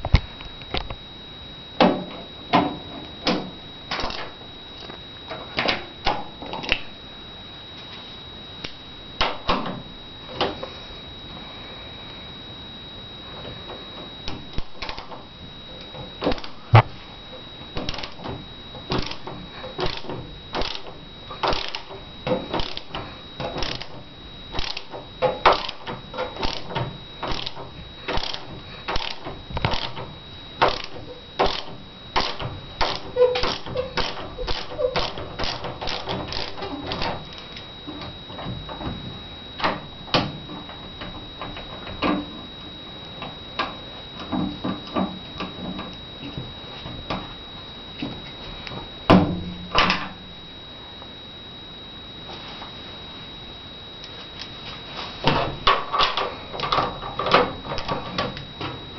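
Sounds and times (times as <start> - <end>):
faint high whine: 0.0 - 58.9
sharp clicks and knocks: 1.8 - 6.9, 13.4 - 16.9, 17.8 - 42.5, 55.2 - 58.8.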